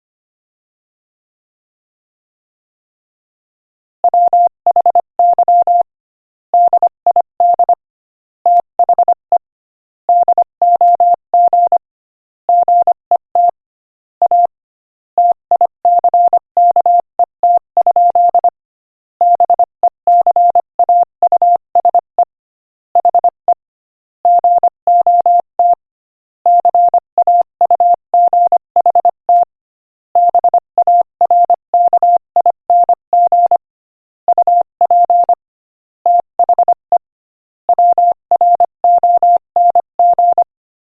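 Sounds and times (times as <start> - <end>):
morse code tone: 37.7 - 40.5.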